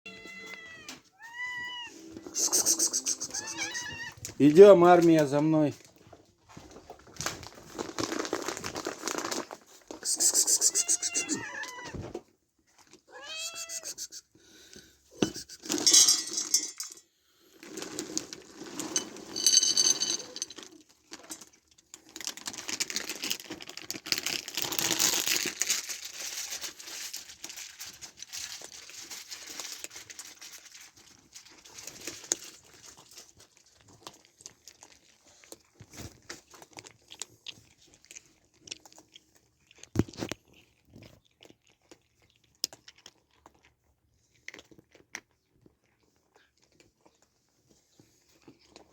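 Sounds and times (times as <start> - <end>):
cats meowing: 0.1 - 4.4, 10.2 - 12.2, 13.0 - 14.3
rustling and crinkling: 0.1 - 14.0, 14.8 - 48.9.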